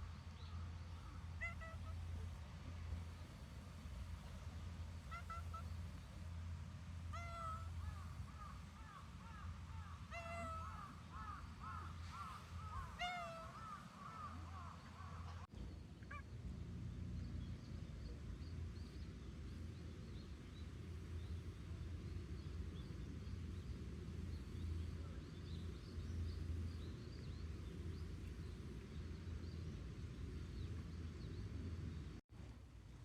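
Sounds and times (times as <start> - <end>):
birds chirping: 4.2 - 6.2.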